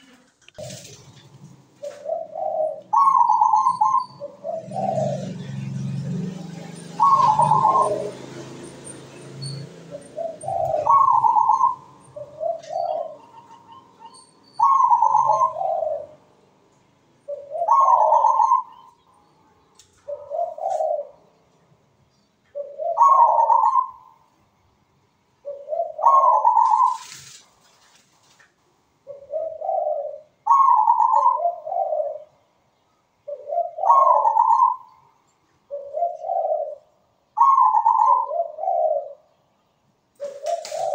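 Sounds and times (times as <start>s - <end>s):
dove cooing: 0.0s - 16.4s, 17.2s - 19.0s, 20.0s - 21.3s, 22.5s - 24.2s, 25.4s - 27.2s, 29.1s - 32.4s, 33.3s - 35.0s, 35.7s - 39.3s, 40.2s - 40.9s.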